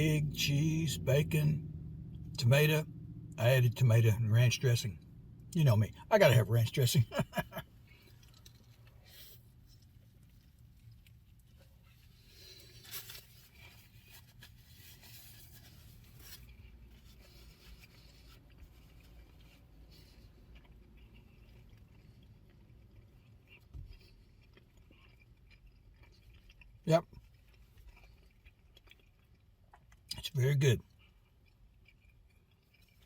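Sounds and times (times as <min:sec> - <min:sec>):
faint chewing: 0:06.6 - 0:33.0.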